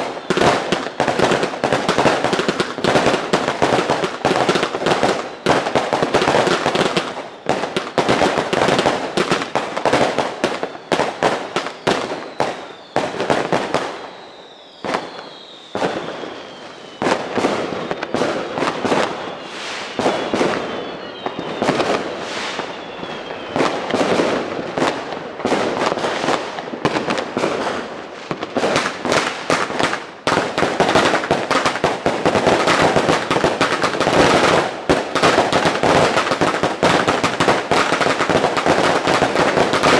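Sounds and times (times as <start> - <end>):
firework whistle falling in pitch: 0.0 - 1.8, 10.0 - 25.0
fireworks and firecrackers banging: 0.0 - 39.9.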